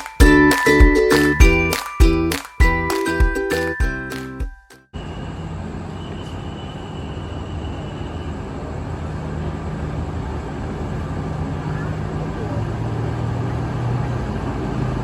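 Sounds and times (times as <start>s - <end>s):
diesel locomotive engine drone: 5.0s - 15.0s.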